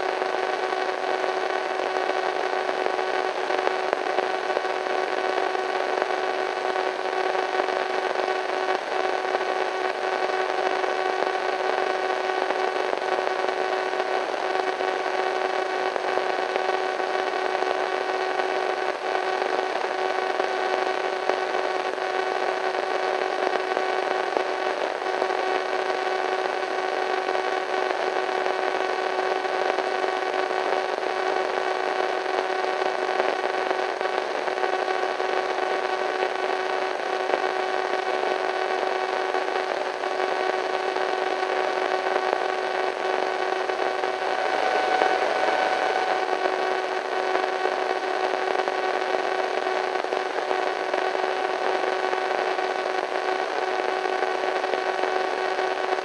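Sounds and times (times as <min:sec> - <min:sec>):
radio static hiss: 0:35.4 - 0:56.0
faint humming tones: 0:43.1 - 0:47.9.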